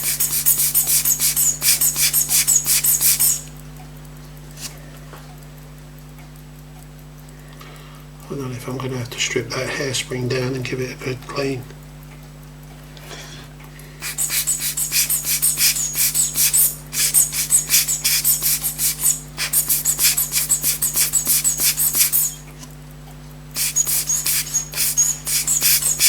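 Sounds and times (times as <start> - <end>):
pocket watch ticking: 0.1 - 3.5.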